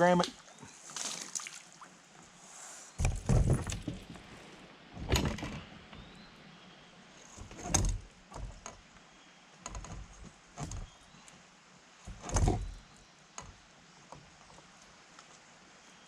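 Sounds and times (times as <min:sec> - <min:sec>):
dull knocks on a kayak: 0:03.0 - 0:04.1.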